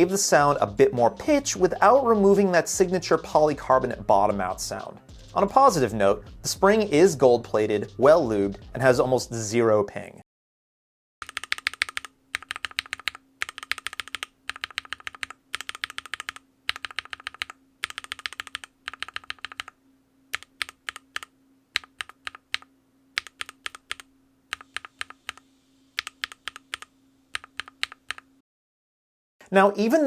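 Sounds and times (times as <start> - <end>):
mechanical keyboard typing: 11.2 - 25.4, 26.0 - 28.3.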